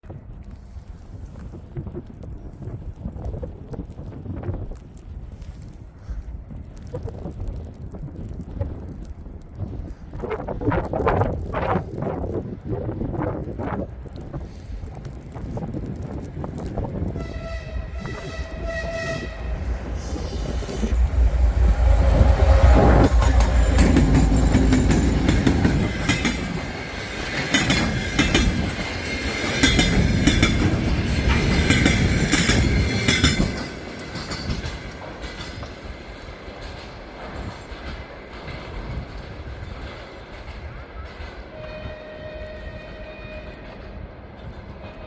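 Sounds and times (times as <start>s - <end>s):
diesel locomotive rumble: 13.9s - 45.0s
locomotive horn blast: 17.2s - 19.7s, 41.5s - 43.6s.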